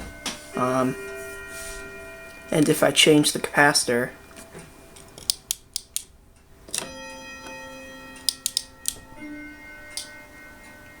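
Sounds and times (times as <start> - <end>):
sharp clicks: 5.2 - 6.1.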